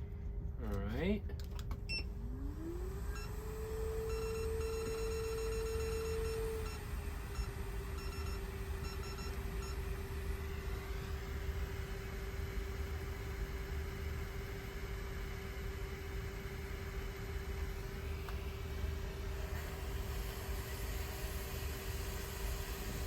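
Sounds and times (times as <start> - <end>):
electric blower motor whining: 2.1 - 23.0
short electronic beeps: 4.1 - 9.8.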